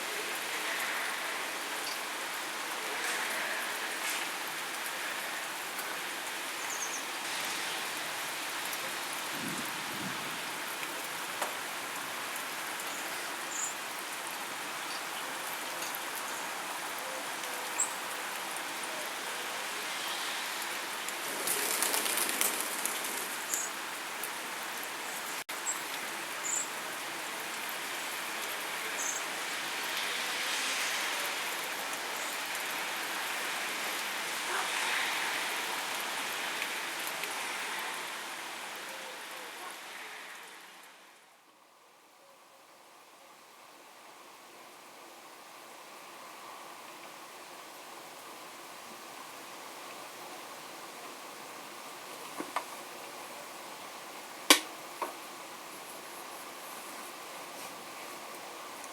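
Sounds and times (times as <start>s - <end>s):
heavy rain falling: 0.0s - 41.4s.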